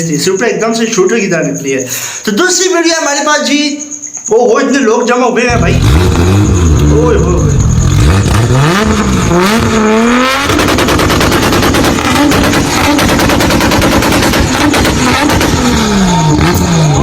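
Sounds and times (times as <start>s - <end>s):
car engine revving: 5.5s - 17.0s
exhaust pops and bangs: 5.5s - 17.0s.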